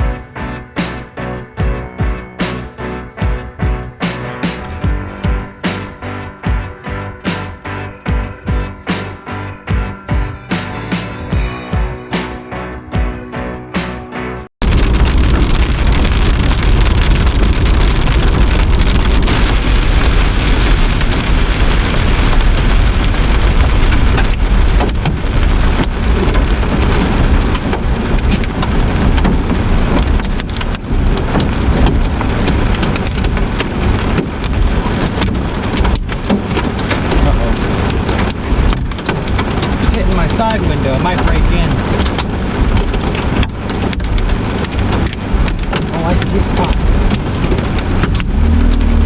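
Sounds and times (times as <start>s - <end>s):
deep rumble: 0.0s - 49.0s
heavy rain drumming on vehicle: 14.6s - 49.0s.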